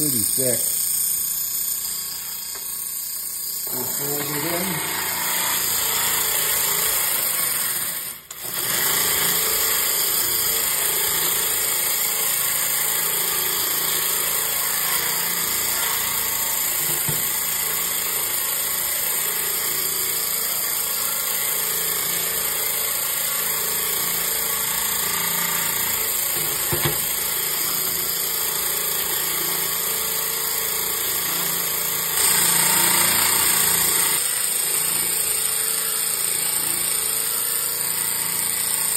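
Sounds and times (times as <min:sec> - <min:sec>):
blade cleaner whirring with hiss: 0:00.0 - 0:21.6, 0:22.4 - 0:30.8.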